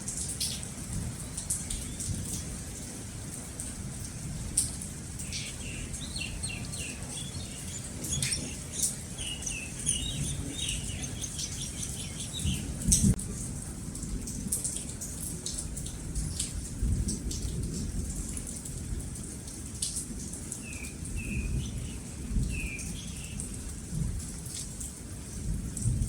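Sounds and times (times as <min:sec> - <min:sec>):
steady rain: 0:00.0 - 0:26.0
bird chirping: 0:05.2 - 0:13.2, 0:20.7 - 0:23.5.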